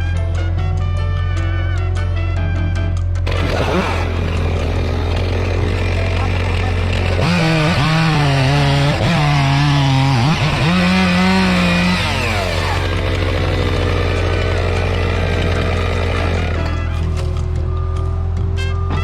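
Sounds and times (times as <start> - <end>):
chainsaw cutting wood: 3.2 - 17.7.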